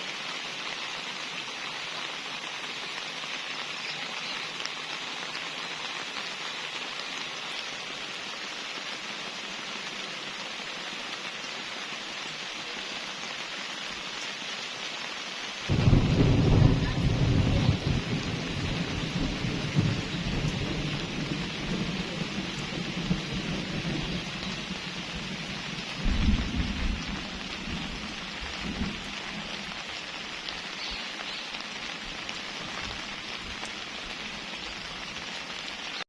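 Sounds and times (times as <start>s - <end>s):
steady rain: 0.0s - 36.0s
thunder rumbles: 15.7s - 29.8s.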